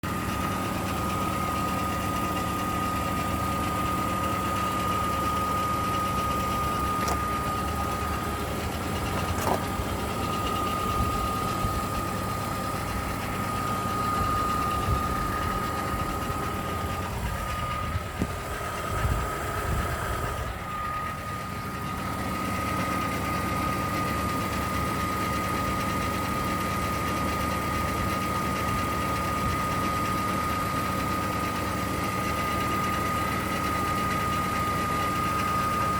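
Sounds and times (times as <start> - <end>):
car engine idling: 0.0 - 35.9
irregular engine knocks: 6.8 - 7.6, 8.8 - 10.0.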